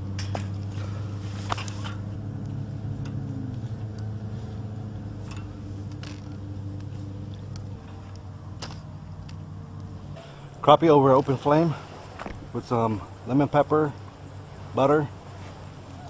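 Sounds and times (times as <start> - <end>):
engine humming: 0.0 - 16.0
light clicks: 0.1 - 10.6.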